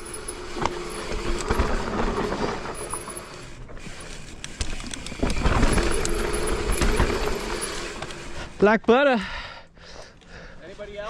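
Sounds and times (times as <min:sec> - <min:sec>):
rear hub freewheel buzz: 0:00.0 - 0:08.7
bike tyres rumbling over dirt: 0:00.0 - 0:08.8.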